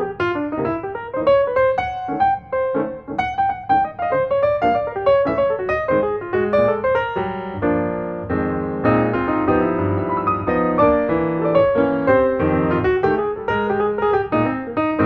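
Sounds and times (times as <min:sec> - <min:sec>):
solo piano music: 0:00.0 - 0:15.0.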